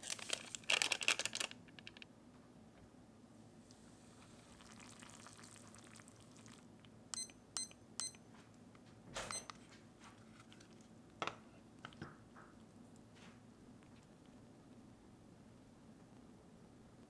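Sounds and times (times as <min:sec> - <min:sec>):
packaging crinkling: 0:00.0 - 0:02.1
short electronic beeps: 0:07.2 - 0:08.2, 0:09.3 - 0:09.5.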